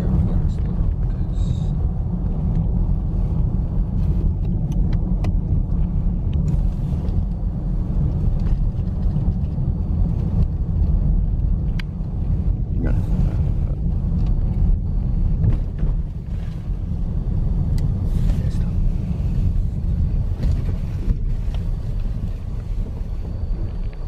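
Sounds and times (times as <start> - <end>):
moving vehicle rumble: 0.0 - 24.0.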